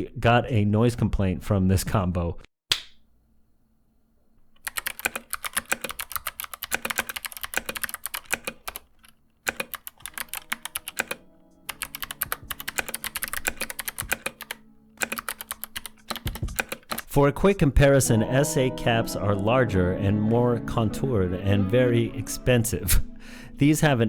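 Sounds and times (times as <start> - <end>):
clicky mechanical keyboard typing: 4.6 - 17.1.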